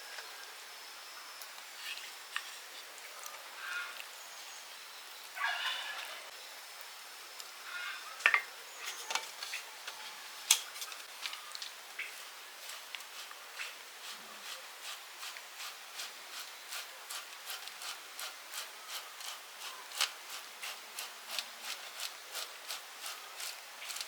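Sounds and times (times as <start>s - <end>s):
utensil scraping a pan: 8.2s - 11.0s, 12.0s - 24.0s.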